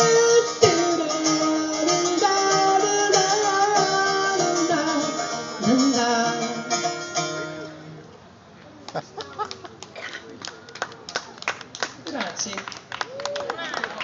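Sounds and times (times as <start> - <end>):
person singing: 0.0 - 7.0
acoustic guitar: 0.0 - 8.1.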